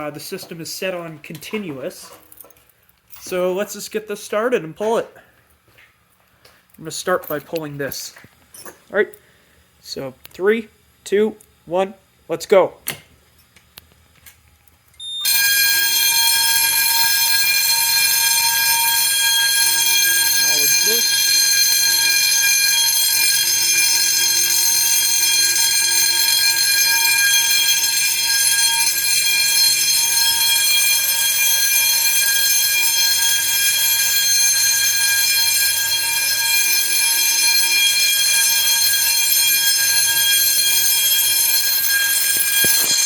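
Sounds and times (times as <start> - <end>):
fire alarm bells ringing: 0.0 - 4.9, 15.0 - 43.0.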